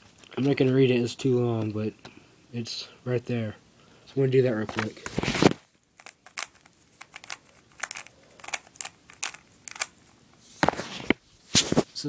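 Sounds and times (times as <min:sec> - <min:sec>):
puzzle cube plastic clicks: 0:06.0 - 0:10.0.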